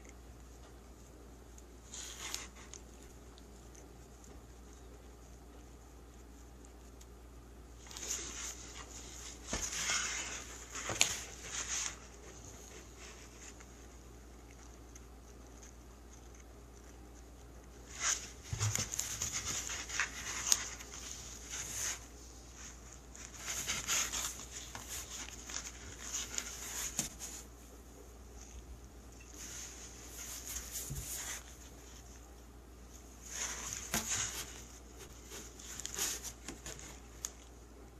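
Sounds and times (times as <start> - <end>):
cat scratching in cardboard box: 17.8 - 22.2.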